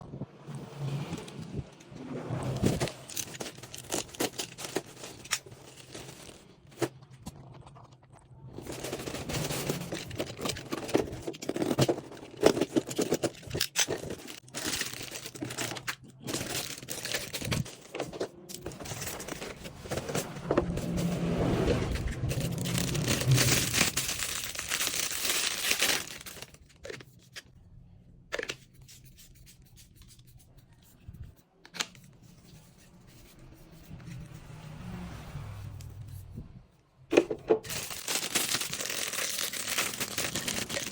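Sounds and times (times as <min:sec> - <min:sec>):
clicks and scrapes: 0:00.8 - 0:27.6
plastic wrapping tearing and crinkling: 0:02.7 - 0:06.4, 0:08.7 - 0:18.0, 0:22.1 - 0:27.0, 0:37.6 - 0:40.9.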